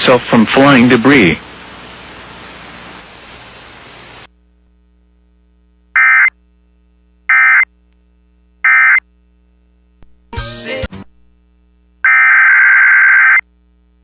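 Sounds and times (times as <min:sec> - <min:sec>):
radio static: 0:00.0 - 0:04.3
faint hum: 0:00.0 - 0:14.0.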